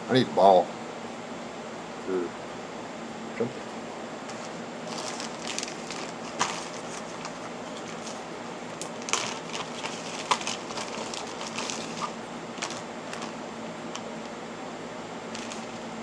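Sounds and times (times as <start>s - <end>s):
steady background hiss: 0.0s - 16.0s
clicks and knocks of objects handled: 8.8s - 14.4s, 15.3s - 15.8s.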